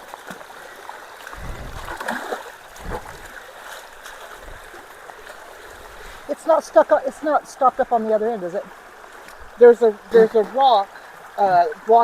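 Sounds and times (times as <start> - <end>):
creek water rushing through culvert: 0.0 - 12.0
low bumps: 1.3 - 3.4.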